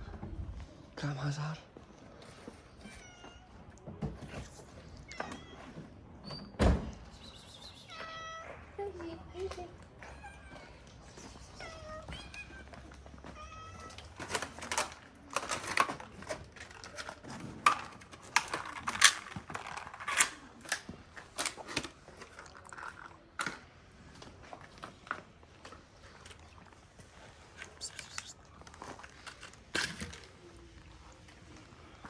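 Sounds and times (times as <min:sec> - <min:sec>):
cat meowing: 0:02.7 - 0:03.6, 0:07.7 - 0:09.0, 0:10.0 - 0:14.2.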